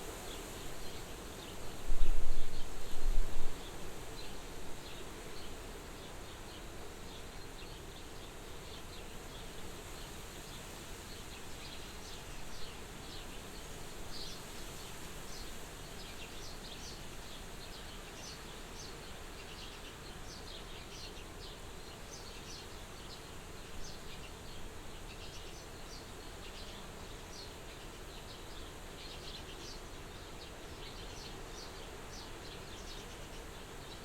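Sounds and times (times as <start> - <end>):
wind blowing at a window: 0.0 - 6.5.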